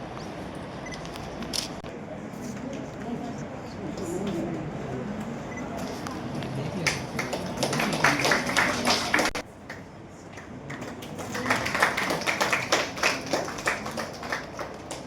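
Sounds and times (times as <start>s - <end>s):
audience clapping: 6.8s - 15.0s.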